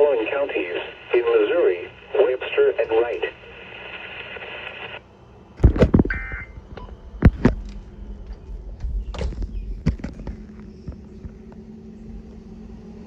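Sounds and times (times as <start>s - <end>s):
radio hiss: 0.0s - 6.1s
low rumble: 5.6s - 13.0s
sharp clicks and knocks: 6.8s - 11.6s.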